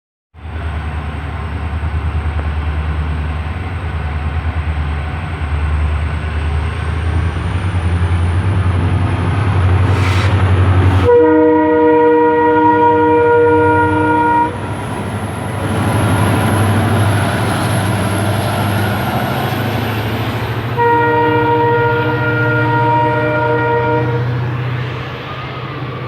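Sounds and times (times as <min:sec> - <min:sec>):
locomotive engine pulsing rumble: 0:00.4 - 0:26.0
multi-tone air horn: 0:09.8 - 0:14.6, 0:20.8 - 0:24.3.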